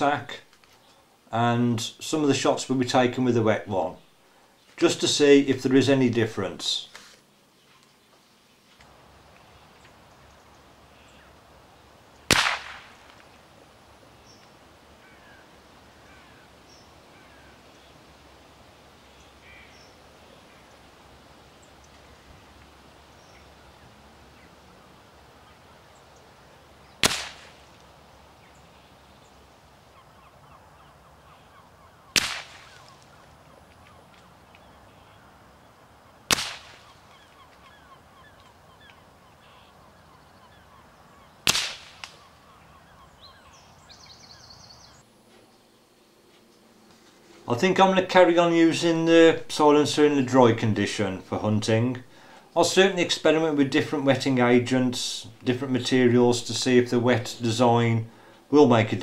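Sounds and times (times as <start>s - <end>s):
suppressed rifle shots: 12.3s - 13.2s, 27.0s - 27.8s, 32.1s - 33.0s, 36.3s - 37.1s, 41.4s - 42.3s.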